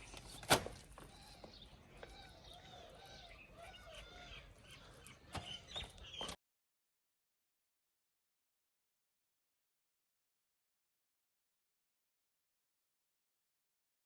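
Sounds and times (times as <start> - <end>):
faint bird chirps: 0.0 - 6.4.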